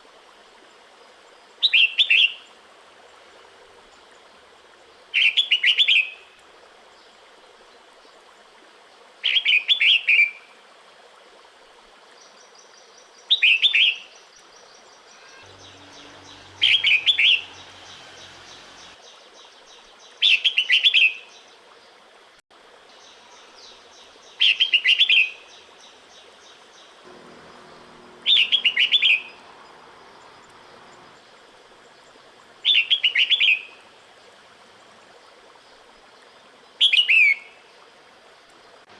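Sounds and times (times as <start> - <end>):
bird chirping: 14.8 - 19.0, 27.0 - 34.3.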